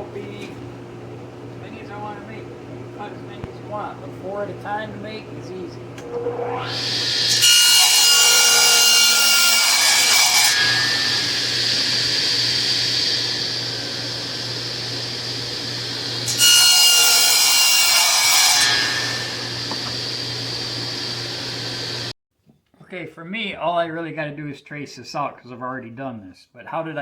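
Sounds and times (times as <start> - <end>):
saw motor humming: 1.4 - 22.1
saw crosscutting plywood: 6.0 - 22.1.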